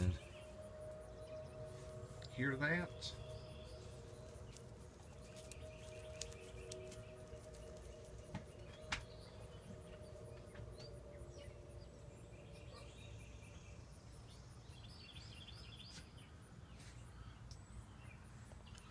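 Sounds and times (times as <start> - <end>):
faint bird chirps: 0.0 - 18.9
high insect ticking: 3.2 - 11.9.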